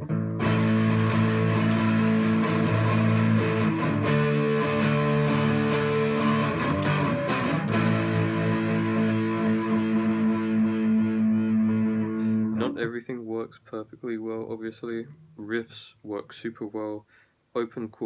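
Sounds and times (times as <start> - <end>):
fuzzed electric guitar chords: 0.0 - 12.9.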